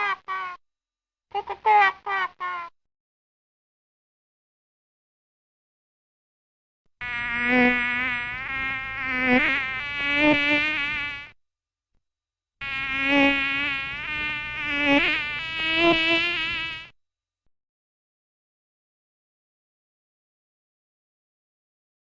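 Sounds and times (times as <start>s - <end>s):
flying insect buzzing: 7.0s - 11.4s, 12.6s - 17.0s.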